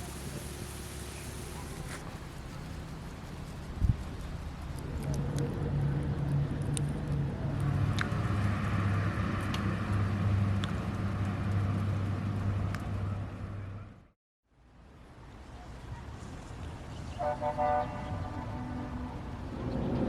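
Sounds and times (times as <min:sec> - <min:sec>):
vehicle engine droning: 0:00.0 - 0:14.2.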